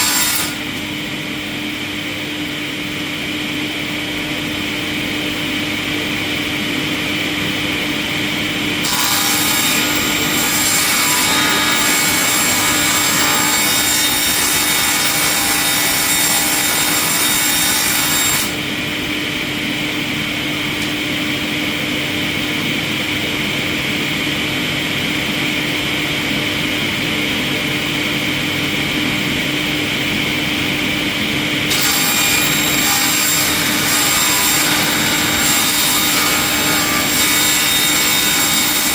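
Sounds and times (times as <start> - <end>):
loud grinding of wood: 8.8 - 18.5, 31.7 - 38.9.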